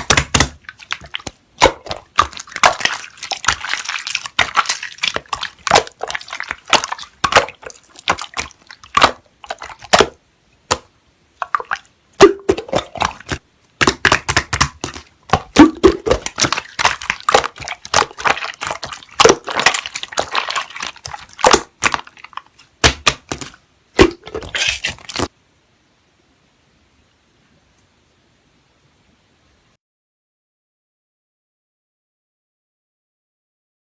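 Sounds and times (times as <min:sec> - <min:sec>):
slime crackling and squishing: 0:00.0 - 0:10.8, 0:11.4 - 0:25.3.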